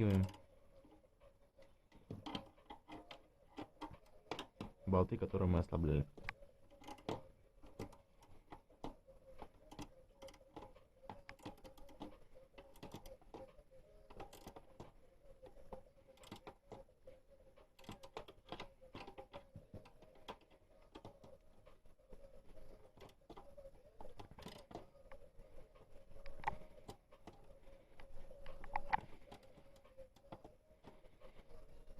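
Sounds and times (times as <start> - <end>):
wrench clicking and tapping: 1.9 - 4.8, 6.1 - 13.5, 14.1 - 16.9, 17.6 - 21.4, 22.9 - 25.2.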